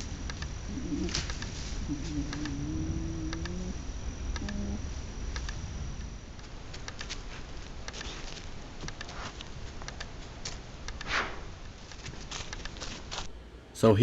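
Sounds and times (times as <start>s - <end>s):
faint high whine: 0.0s - 14.0s
low rumble and hiss: 0.0s - 14.0s
small clicks: 3.3s - 3.6s, 4.3s - 5.6s, 6.4s - 7.2s, 7.8s - 11.1s.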